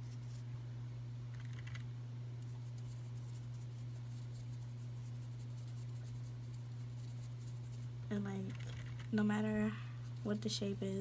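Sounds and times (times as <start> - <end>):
paintbrush dabbing on paper: 2.5 - 7.9.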